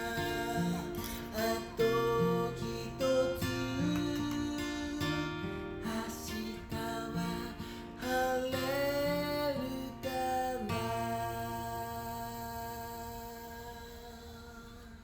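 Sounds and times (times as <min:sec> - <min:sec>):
acoustic guitar song: 0:00.0 - 0:15.0.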